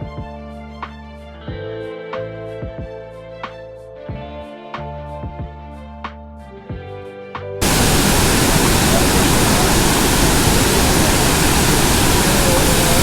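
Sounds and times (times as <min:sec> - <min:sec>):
wind blowing across microphone: 0:07.6 - 0:13.0.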